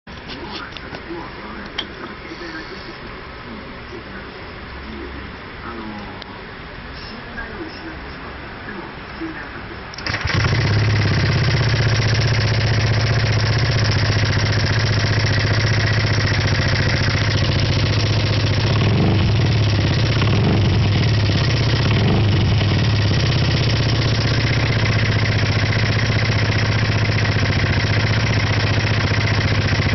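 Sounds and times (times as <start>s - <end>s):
scooter engine idling with rattling: 10.0s - 29.9s.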